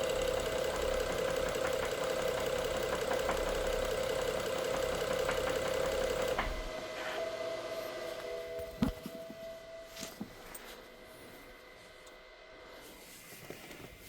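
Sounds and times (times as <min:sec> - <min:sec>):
car engine running with knock: 0:00.0 - 0:06.7.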